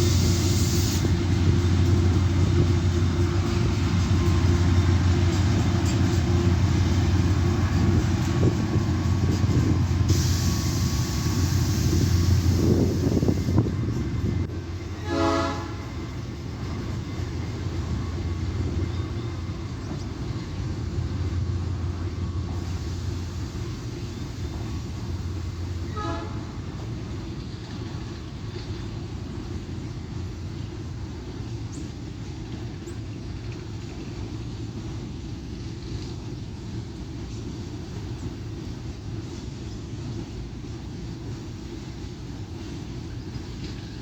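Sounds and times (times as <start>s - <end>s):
freight train rumbling past: 0.0s - 44.0s
train horn toots: 10.1s - 13.7s, 14.8s - 16.1s, 25.8s - 26.8s.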